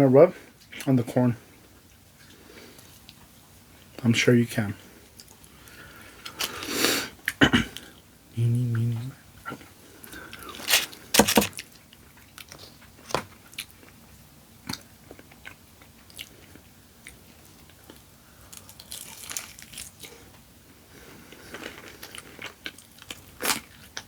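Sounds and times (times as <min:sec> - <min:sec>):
chewing crunchy food: 0:10.1 - 0:20.4, 0:21.1 - 0:24.0.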